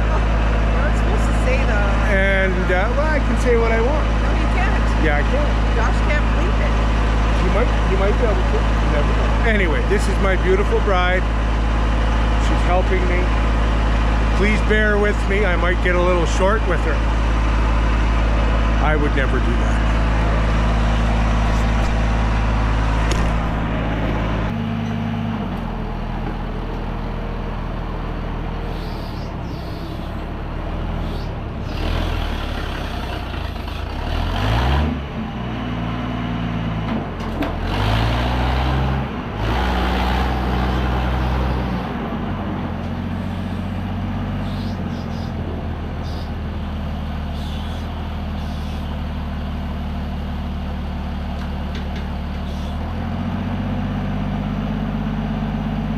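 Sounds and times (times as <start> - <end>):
engine running: 0.0 - 55.9.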